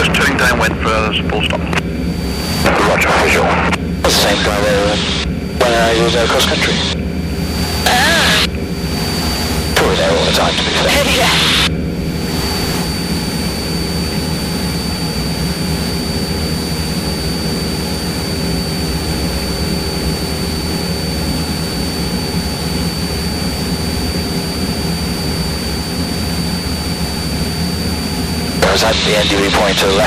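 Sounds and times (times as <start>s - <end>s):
propeller plane engine droning: 0.0s - 30.0s
thin high whine: 1.3s - 30.0s.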